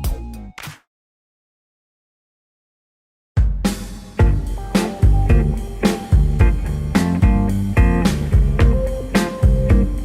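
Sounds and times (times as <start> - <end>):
background music with beat: 0.0 - 0.8, 3.4 - 10.0.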